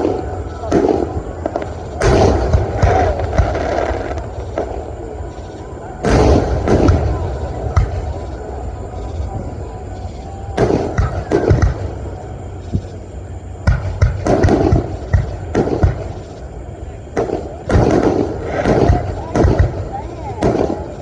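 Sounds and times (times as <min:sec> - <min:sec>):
fireworks bangs and pops: 0:00.0 - 0:04.8, 0:06.0 - 0:08.2, 0:10.6 - 0:12.0, 0:13.6 - 0:16.4, 0:17.1 - 0:21.0
low rumble: 0:00.0 - 0:21.0.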